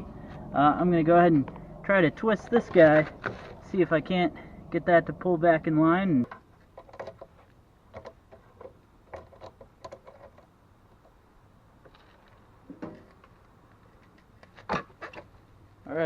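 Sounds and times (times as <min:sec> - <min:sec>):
metal clicks and knocks: 0:06.2 - 0:11.2.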